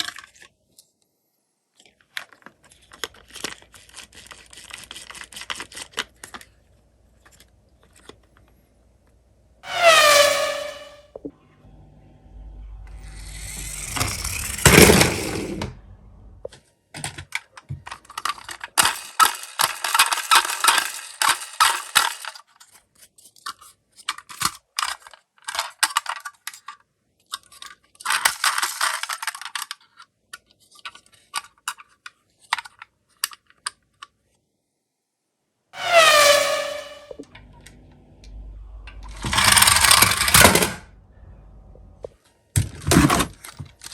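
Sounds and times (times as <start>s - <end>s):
toy cars clinking and clattering: 0.0s - 0.8s, 1.8s - 8.5s, 12.9s - 15.8s, 17.0s - 34.2s, 38.9s - 40.9s, 42.6s - 43.9s
rising noise: 9.6s - 16.5s, 35.8s - 42.1s.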